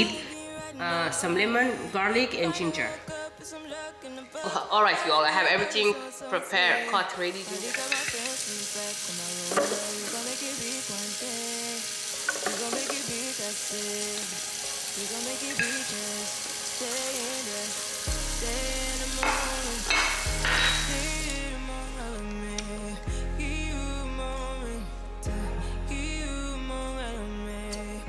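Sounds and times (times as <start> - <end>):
steady hiss: 7.2 - 23.8
slow melody of held notes: 7.6 - 28.0
deep sustained bass notes: 18.1 - 28.0.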